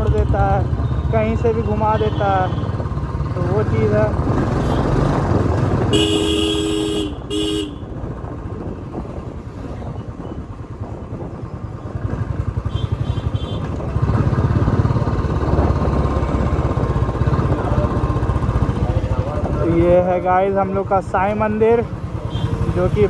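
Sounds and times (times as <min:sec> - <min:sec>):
motorcycle engine running: 0:00.0 - 0:23.0
vehicle horn blasts: 0:04.6 - 0:05.0, 0:05.9 - 0:07.9, 0:12.7 - 0:13.8
higher horn beeping: 0:05.9 - 0:07.8.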